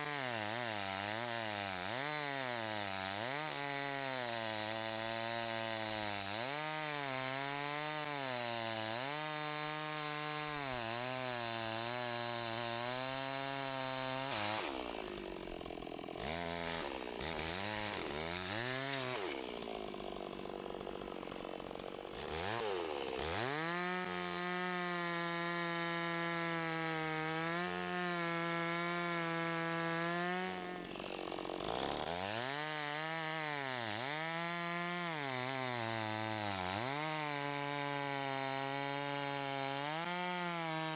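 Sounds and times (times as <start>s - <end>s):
chainsaw cutting log: 0.0s - 40.9s.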